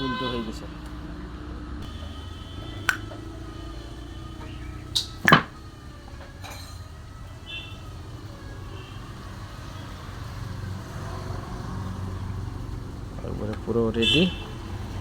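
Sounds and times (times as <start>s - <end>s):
sharp metallic clinks and knocks: 5.2s - 5.6s.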